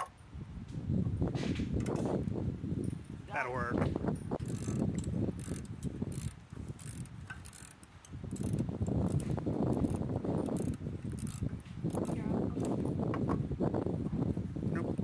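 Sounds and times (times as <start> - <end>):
ratchet tool clicking: 4.4 - 12.8.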